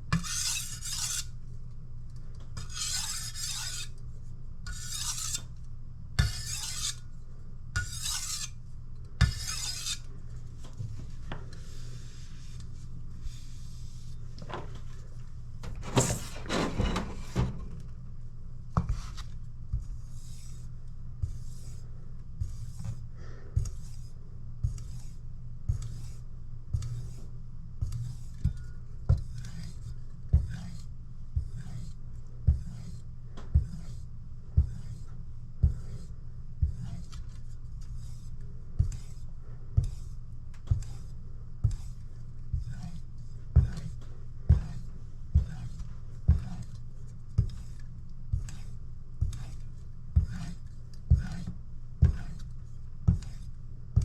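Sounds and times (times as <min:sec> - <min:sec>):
knife scraping on sharpening stone: 0:00.2 - 0:01.3, 0:02.7 - 0:03.9, 0:04.7 - 0:05.5, 0:06.2 - 0:07.0, 0:07.8 - 0:08.6, 0:09.2 - 0:10.0.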